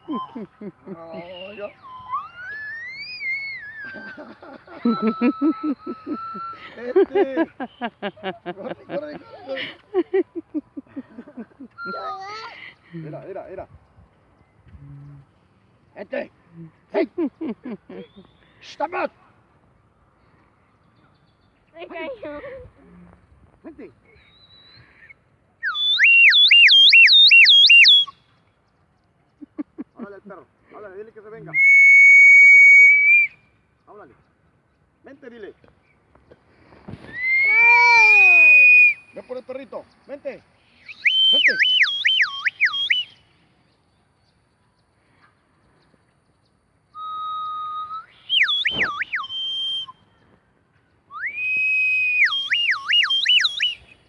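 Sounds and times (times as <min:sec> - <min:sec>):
person whistling loudly: 0:01.2 - 0:06.8, 0:11.8 - 0:12.2, 0:25.6 - 0:28.2, 0:31.5 - 0:33.4, 0:37.1 - 0:39.2, 0:40.8 - 0:43.2, 0:47.0 - 0:50.0, 0:51.1 - 0:54.0.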